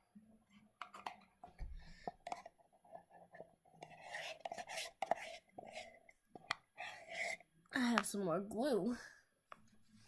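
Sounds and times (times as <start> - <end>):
scraping and rubbing handling noise: 0.5 - 7.6.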